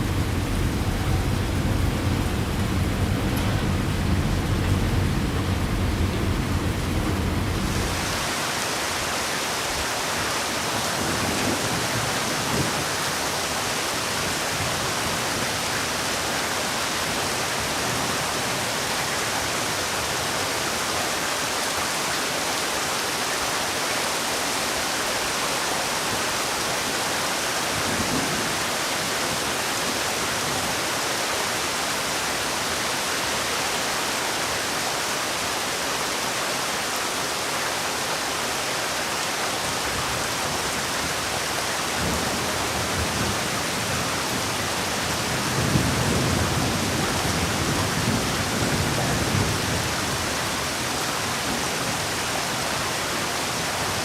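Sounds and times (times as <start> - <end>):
low rumble of thunder: 0.0 - 8.3, 41.9 - 50.8
heavy rain hissing: 0.0 - 54.0.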